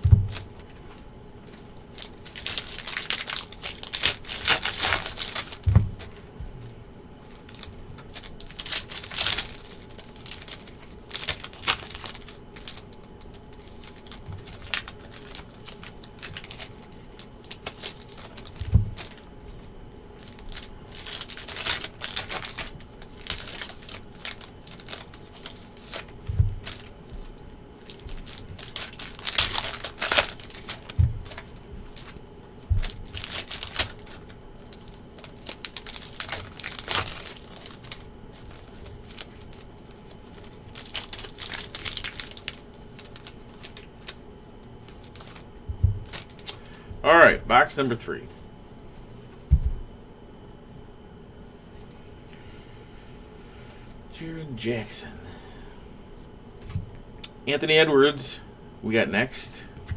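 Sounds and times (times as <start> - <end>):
dull thumps on table: 0.0 - 0.5, 49.5 - 49.9
foil wrappers tearing and crinkling: 0.0 - 6.3, 7.2 - 46.8.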